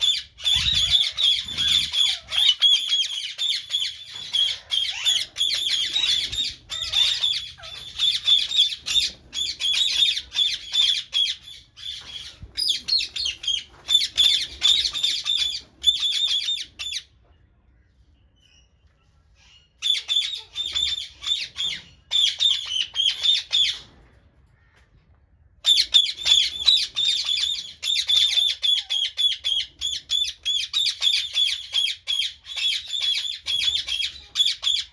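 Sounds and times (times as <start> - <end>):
flock of birds calling: 0.0 - 16.6.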